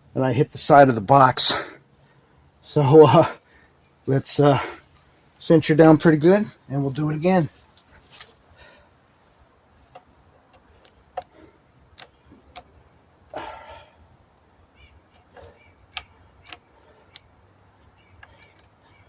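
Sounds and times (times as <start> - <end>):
short rustle: 7.4 - 8.6
tool clicking and tapping: 9.9 - 11.3, 11.9 - 12.7, 15.1 - 17.3.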